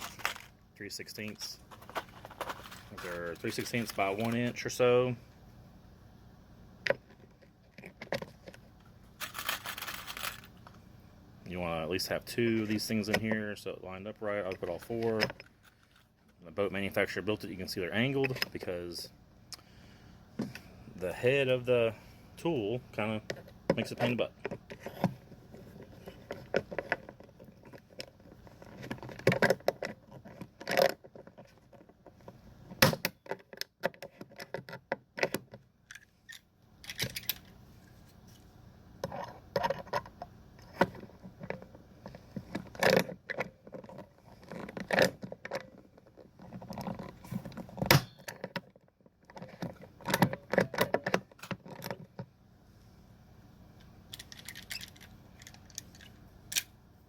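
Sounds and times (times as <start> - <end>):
metal screws and tools clinking: 9.2 - 10.5, 54.1 - 56.6.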